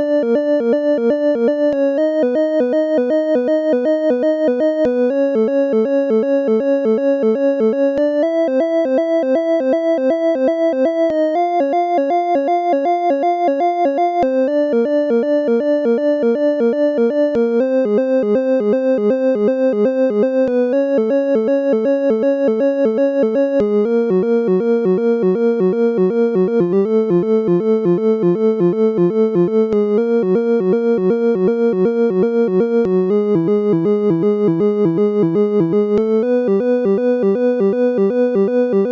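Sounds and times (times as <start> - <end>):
synthesizer music pulsing notes: 6.2 - 38.9.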